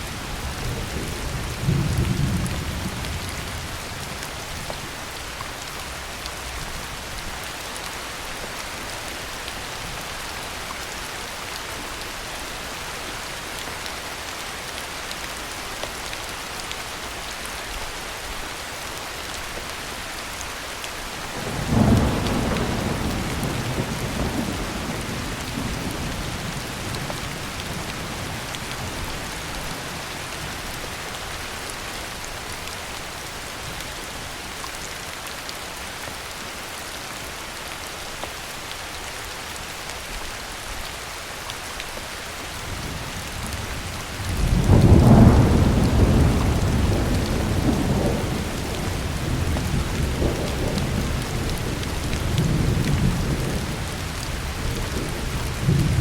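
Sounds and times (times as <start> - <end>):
thunder rumbling: 21.4 - 27.0, 43.4 - 56.0.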